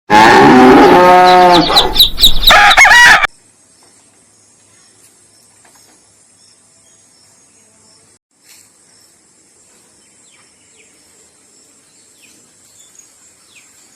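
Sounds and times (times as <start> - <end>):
faint high insect chirr: 3.3 - 13.9.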